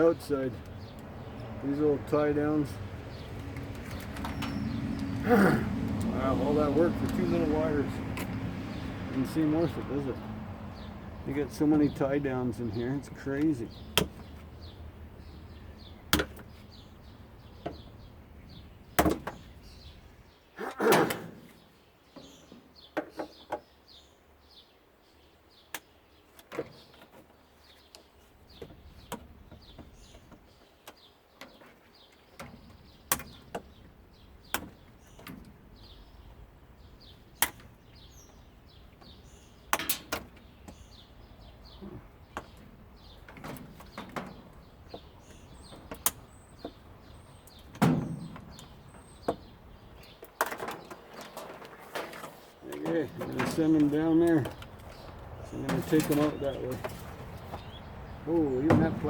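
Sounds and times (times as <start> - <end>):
hand tools clicking and knocking: 50.1 - 57.7.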